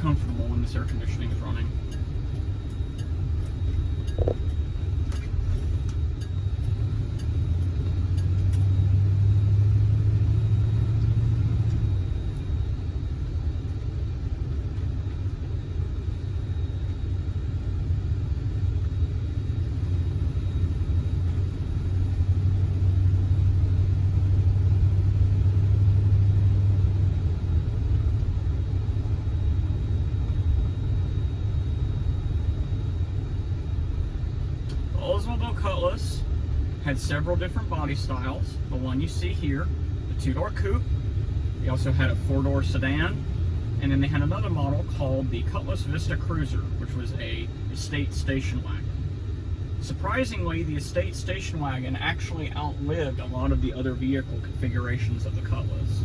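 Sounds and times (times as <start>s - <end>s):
road noise: 0.0s - 17.0s, 17.6s - 56.0s
car engine drone: 0.0s - 56.0s.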